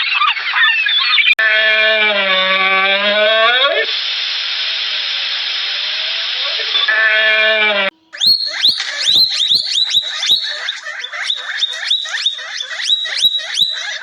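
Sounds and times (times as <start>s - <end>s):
animal chirping: 8.1s - 14.0s
short pitched animal call: 8.2s - 14.0s.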